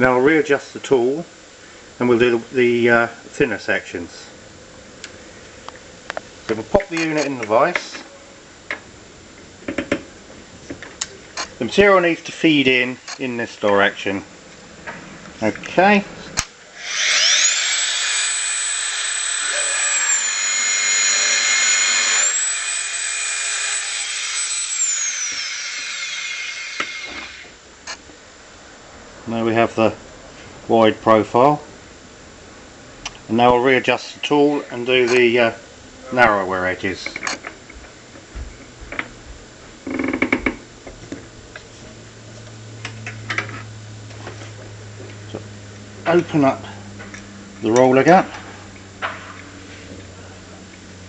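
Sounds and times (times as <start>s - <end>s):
motor high whine: 16.4s - 28.1s, 37.5s - 51.0s
wire grinding: 16.8s - 28.0s
low hum: 40.6s - 51.0s.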